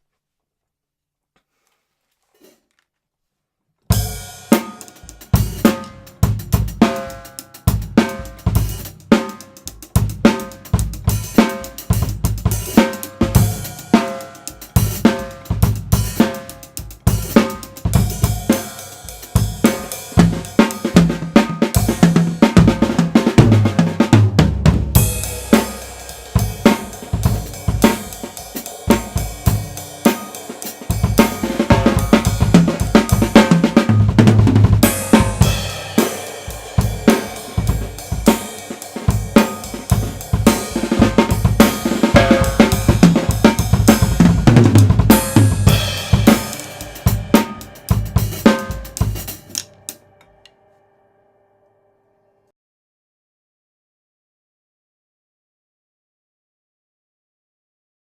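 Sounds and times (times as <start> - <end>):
drum kit groove: 3.9 - 50.3
cymbals crashing: 25.0 - 33.4, 34.8 - 44.1, 45.1 - 50.4.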